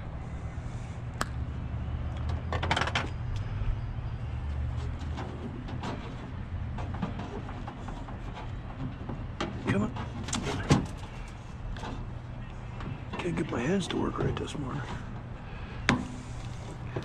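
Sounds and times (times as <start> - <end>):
steady low hum: 0.0 - 17.0
scrap rattling and clattering: 4.8 - 12.1.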